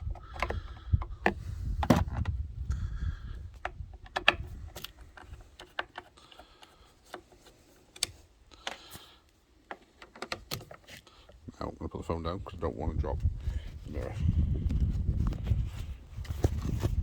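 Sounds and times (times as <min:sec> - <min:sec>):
plastic parts clicking and knocking: 0:00.0 - 0:02.4, 0:03.4 - 0:08.9, 0:09.6 - 0:11.4
microphone handling rumble: 0:00.0 - 0:04.8, 0:12.6 - 0:17.0.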